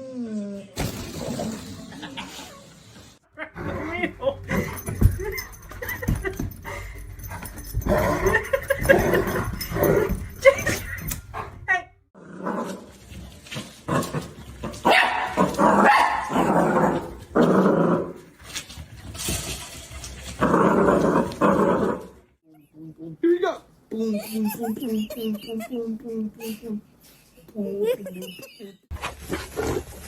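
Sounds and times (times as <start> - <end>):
dog barking and growling: 7.4 - 12.9, 13.6 - 18.2.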